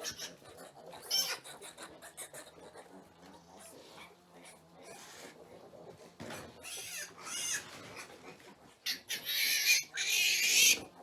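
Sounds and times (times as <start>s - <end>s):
pigs squealing: 6.6s - 7.6s, 8.9s - 10.9s.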